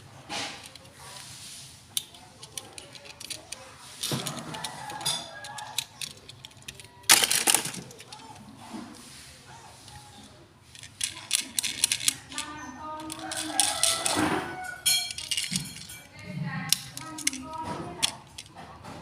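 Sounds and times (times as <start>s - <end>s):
hard plastic clicks and rattles: 2.0s - 8.4s, 10.7s - 14.3s, 16.7s - 18.6s.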